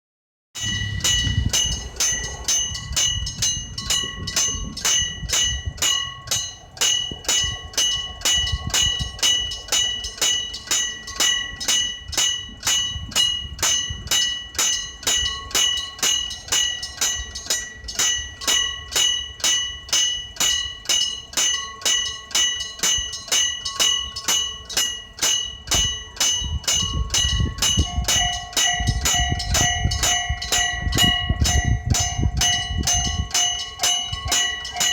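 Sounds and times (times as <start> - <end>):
low rumble: 0.6 - 17.4
level-crossing bell ringing: 0.6 - 34.9.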